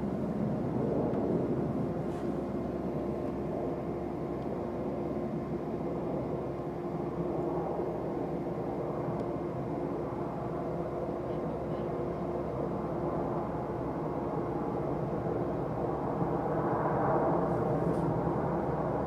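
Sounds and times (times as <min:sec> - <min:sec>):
jet engine rumbling: 0:00.0 - 0:19.0
steady hum: 0:00.0 - 0:19.0.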